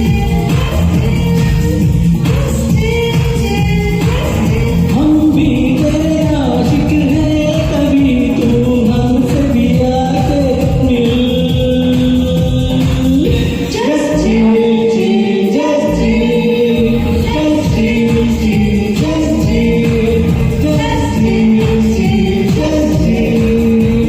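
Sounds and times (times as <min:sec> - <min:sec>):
people singing karaoke: 0:00.0 - 0:24.0
pop backing track: 0:00.0 - 0:24.0.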